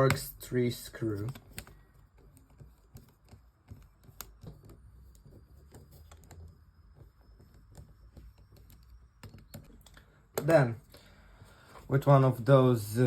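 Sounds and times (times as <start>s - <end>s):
screwdriver clicking and tapping: 2.3s - 4.8s.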